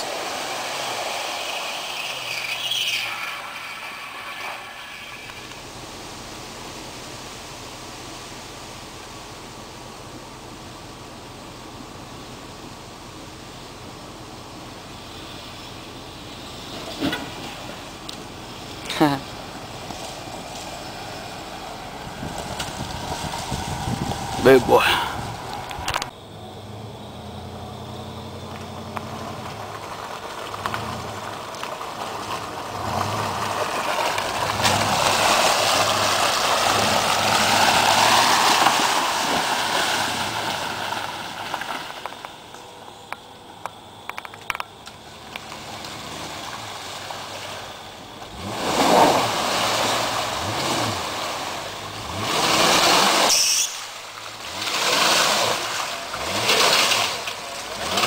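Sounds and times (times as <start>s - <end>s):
off-road vehicle engine revving: 14.6s - 42.1s, 44.9s - 58.0s.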